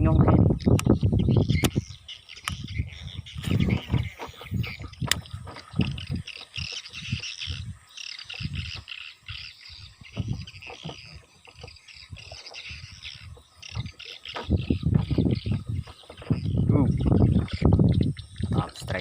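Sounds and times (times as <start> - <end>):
birds chirping: 0.0 - 19.0
insects chirping: 0.0 - 19.0
low thumps: 9.9 - 12.3, 13.2 - 18.7.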